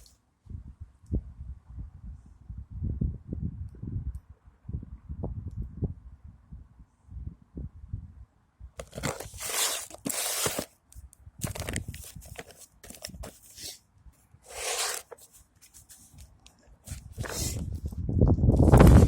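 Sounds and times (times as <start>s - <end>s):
rustling and crunching: 8.8s - 10.8s, 11.4s - 13.8s, 14.5s - 18.0s.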